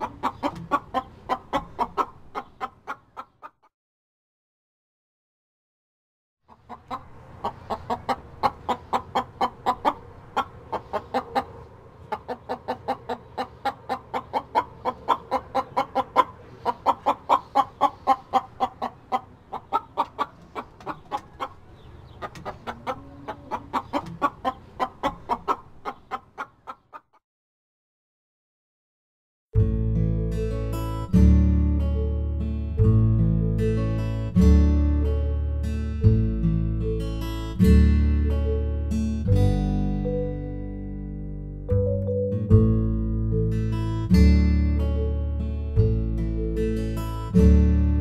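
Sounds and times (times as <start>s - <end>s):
hen clucking: 0.0s - 3.7s, 6.5s - 27.2s.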